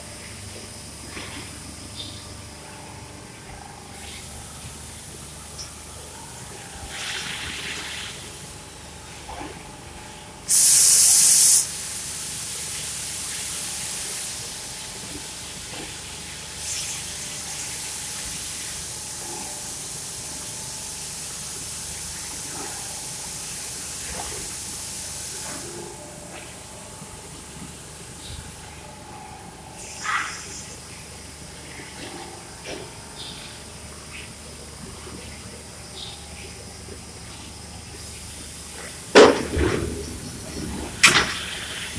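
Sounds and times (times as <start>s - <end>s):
loud blast of air: 10.5s - 12.2s
air hissing: 10.5s - 14.6s, 38.0s - 41.9s.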